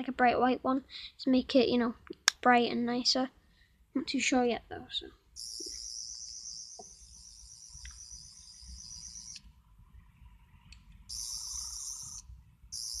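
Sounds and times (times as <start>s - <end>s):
toy electronic warbling whirr: 5.4s - 9.4s, 11.1s - 13.0s.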